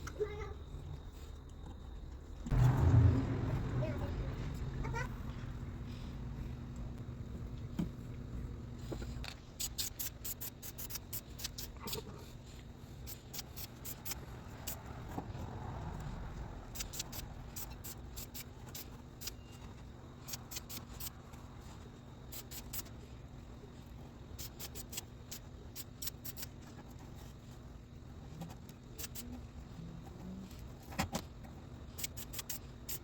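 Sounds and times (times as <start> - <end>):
low steady hum: 0.0 - 9.6.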